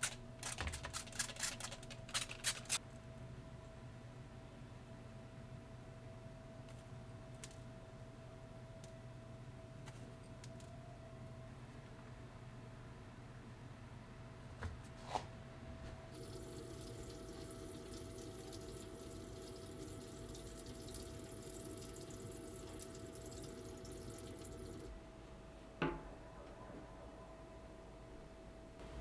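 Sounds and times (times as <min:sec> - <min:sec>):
tap water running: 0:16.2 - 0:24.9.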